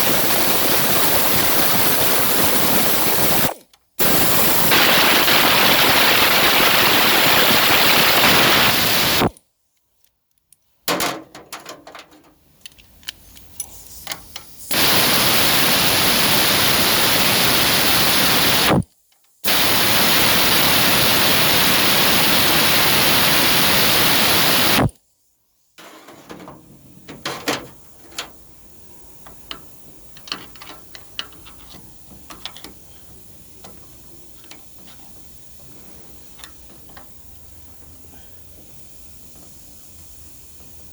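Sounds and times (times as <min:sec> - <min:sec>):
loud rushing hiss: 0:00.0 - 0:09.3, 0:14.5 - 0:18.8, 0:19.4 - 0:24.9.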